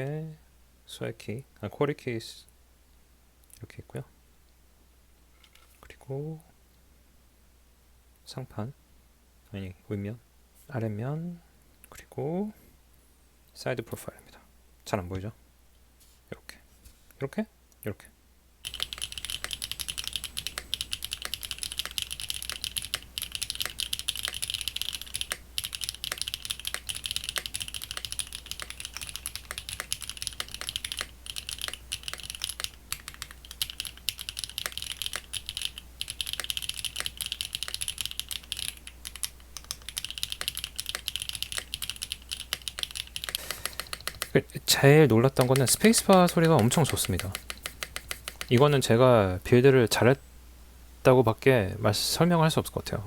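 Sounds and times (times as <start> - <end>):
fast mechanical keyboard typing: 18.6 - 44.4, 45.1 - 48.8.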